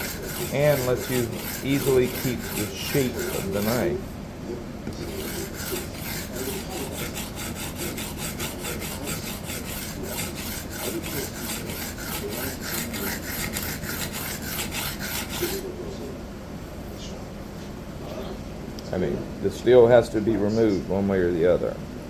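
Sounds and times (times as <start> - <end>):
knife scraping on sharpening plate: 0.0 - 3.9, 4.9 - 15.6.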